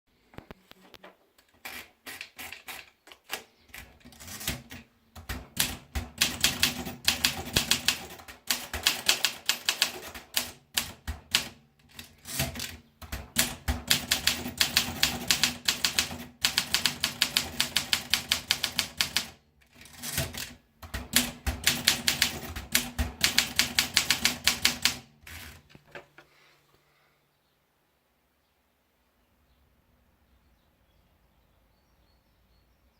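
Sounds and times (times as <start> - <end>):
typewriter keystroke clacks: 1.7 - 25.9.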